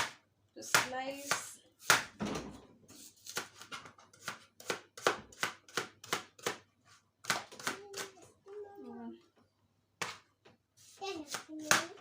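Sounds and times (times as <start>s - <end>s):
knife slicing onion on board: 0.0s - 2.2s, 2.9s - 6.6s, 7.2s - 8.1s, 10.8s - 12.0s.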